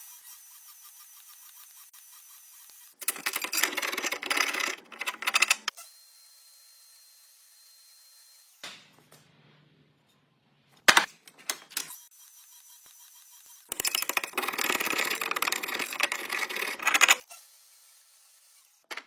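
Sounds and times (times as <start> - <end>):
woodworking tool rattling clicks: 3.0 - 5.7.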